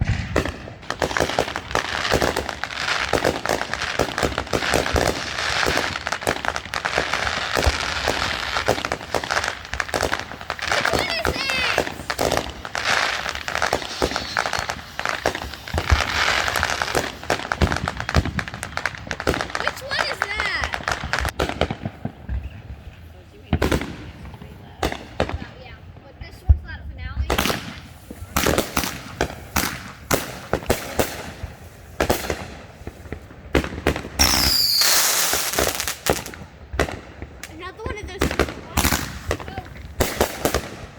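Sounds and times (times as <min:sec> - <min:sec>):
fireworks crackling pops: 0:00.0 - 0:40.9
firework falling whistle: 0:13.6 - 0:14.8, 0:34.2 - 0:35.5.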